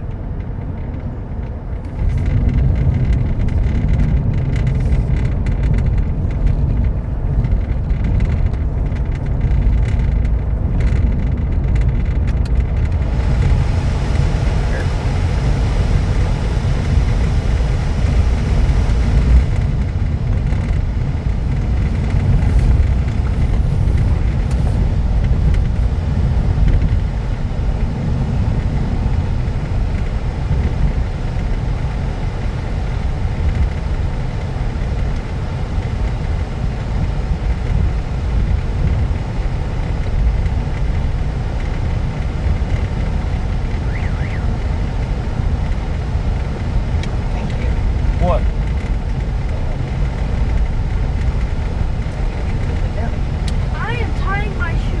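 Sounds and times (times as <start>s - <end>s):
car cabin road noise: 0.0s - 55.0s.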